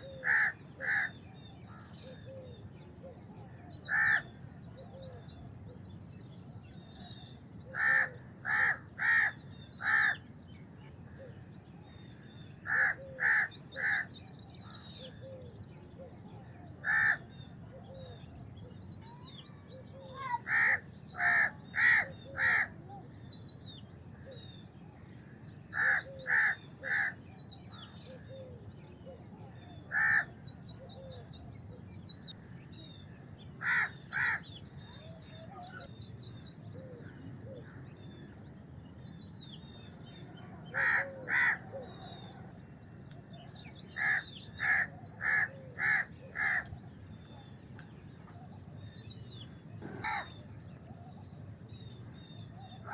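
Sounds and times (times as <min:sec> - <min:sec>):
crows cawing: 0:00.0 - 0:01.2, 0:03.8 - 0:04.4, 0:07.7 - 0:10.2, 0:12.6 - 0:14.8, 0:16.8 - 0:17.3, 0:20.1 - 0:22.8, 0:25.7 - 0:27.2, 0:29.9 - 0:30.4, 0:33.6 - 0:34.6, 0:40.7 - 0:41.8, 0:43.9 - 0:46.7, 0:49.8 - 0:50.4
small birds twittering: 0:00.0 - 0:52.9.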